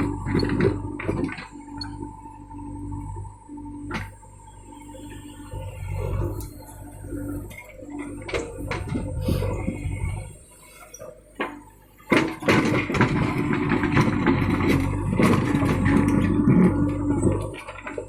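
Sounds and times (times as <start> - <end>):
diesel engine running: 0.0 - 18.0
heavy clattering and rumbling: 7.2 - 10.5, 11.4 - 18.0.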